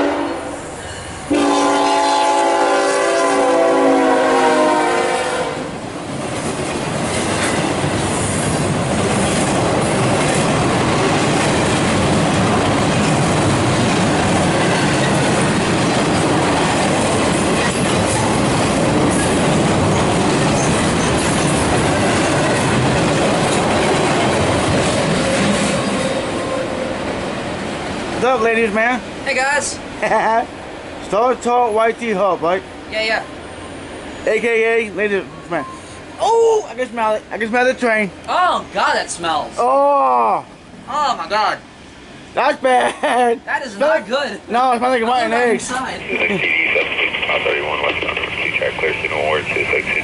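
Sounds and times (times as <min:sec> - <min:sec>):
locomotive horn chord: 0:00.0 - 0:00.6, 0:01.3 - 0:05.7
freight train rumbling past: 0:00.0 - 0:42.8, 0:43.5 - 0:50.0.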